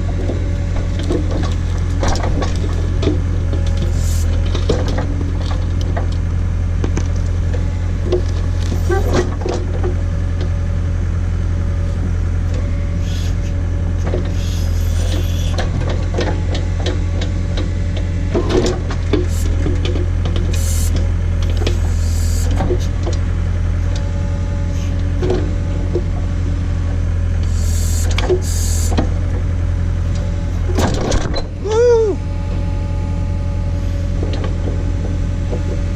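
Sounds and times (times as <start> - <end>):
diesel engine running: 0.0 - 35.9
backhoe knocks creaks and hisses: 0.1 - 6.3, 6.9 - 10.0, 12.0 - 26.3, 27.4 - 29.4, 33.7 - 35.9.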